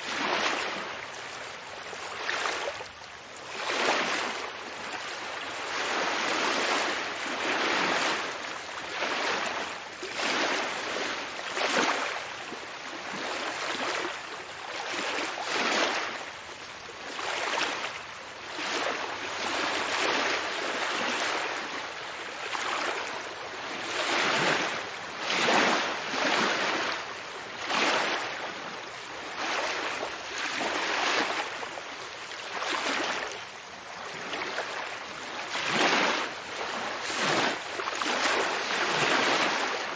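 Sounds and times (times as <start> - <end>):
ocean water lapping: 0.0 - 39.9.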